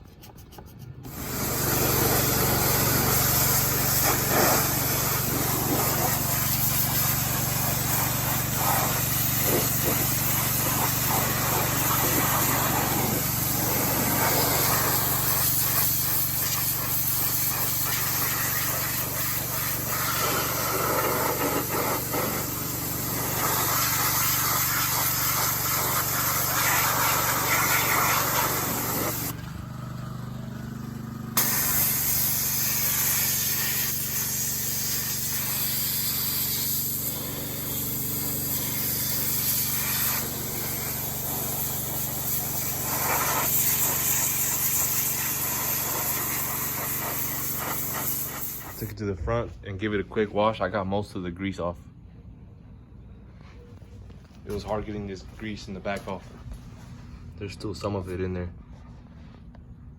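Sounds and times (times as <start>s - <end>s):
pressure washer spraying water: 1.0s - 29.4s, 31.4s - 48.9s.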